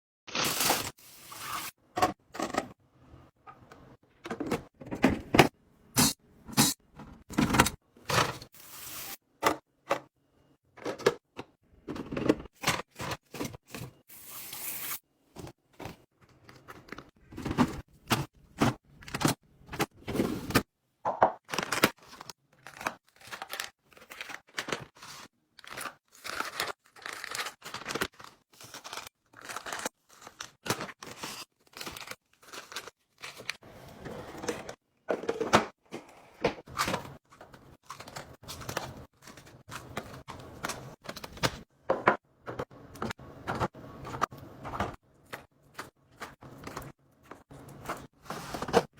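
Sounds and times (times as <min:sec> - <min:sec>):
food packaging crinkling and tearing: 0:21.4 - 0:33.6, 0:37.8 - 0:41.4.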